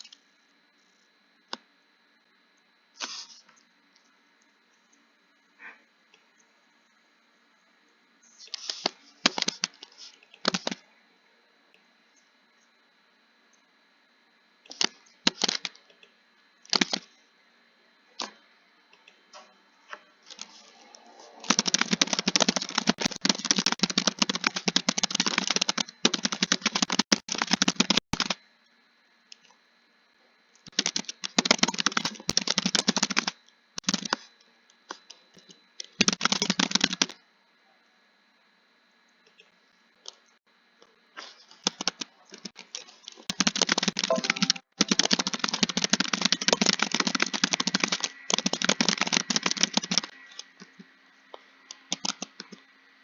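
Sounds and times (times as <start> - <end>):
typing on computer keyboard: 16.7 - 17.0, 21.4 - 28.4, 30.7 - 34.2, 35.8 - 37.2, 41.6 - 42.6, 43.3 - 50.2, 51.7 - 52.6.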